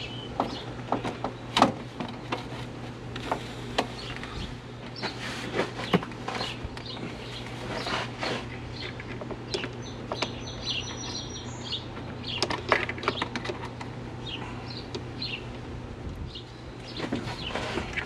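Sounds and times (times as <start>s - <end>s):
birds chirping: 0.0s - 2.5s, 3.2s - 18.0s
steady low hum: 0.0s - 18.0s
sharp clicks and knocks: 11.9s - 13.9s.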